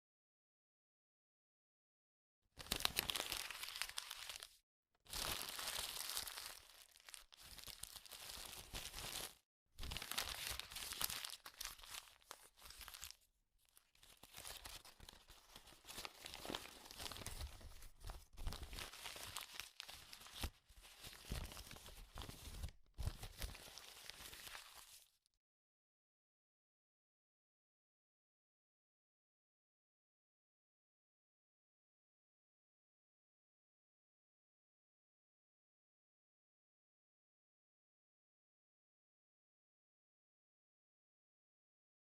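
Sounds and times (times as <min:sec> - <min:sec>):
paper being crumpled by hand: 0:02.6 - 0:25.2.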